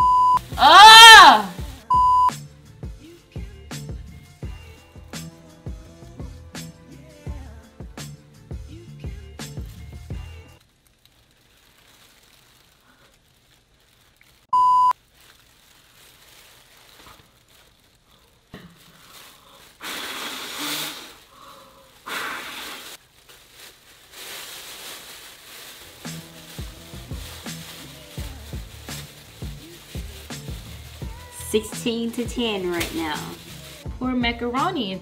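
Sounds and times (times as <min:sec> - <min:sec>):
short high beep: 0:00.0 - 0:00.4, 0:01.9 - 0:02.3, 0:14.6 - 0:14.9
person blowing into a bag: 0:00.3 - 0:02.3, 0:18.0 - 0:23.0, 0:24.1 - 0:33.9.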